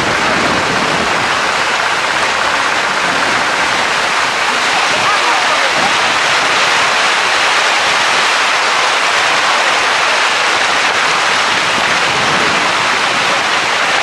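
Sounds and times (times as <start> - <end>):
wind and water rushing: 0.0 - 14.0.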